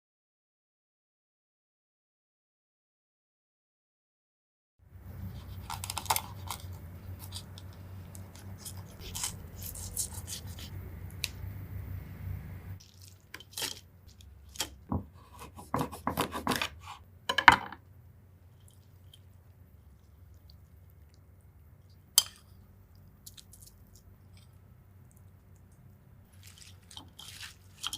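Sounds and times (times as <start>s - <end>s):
steady low hum: 4.9s - 26.4s
kitchen scissors snipping: 5.6s - 11.4s
rustling: 26.3s - 27.9s.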